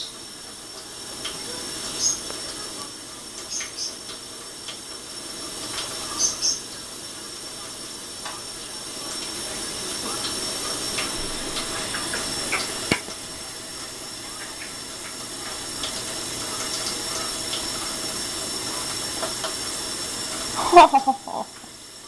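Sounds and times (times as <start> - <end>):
water running: 0.0 - 22.0.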